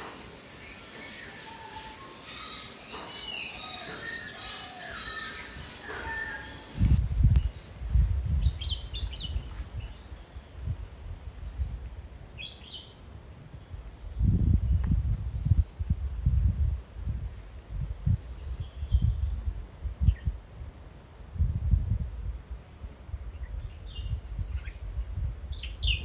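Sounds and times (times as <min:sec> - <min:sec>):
birds calling: 0:00.0 - 0:07.0
insects buzzing: 0:00.0 - 0:07.0.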